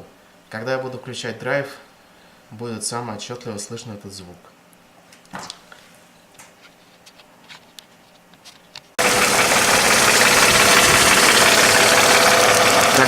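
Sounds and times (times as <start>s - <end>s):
car engine idling with knock: 9.0s - 13.0s.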